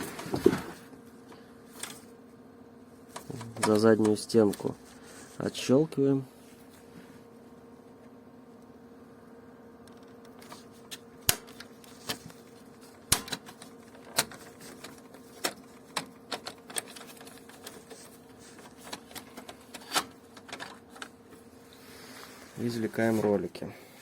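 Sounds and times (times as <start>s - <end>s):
faint steady hum: 0.0s - 24.0s.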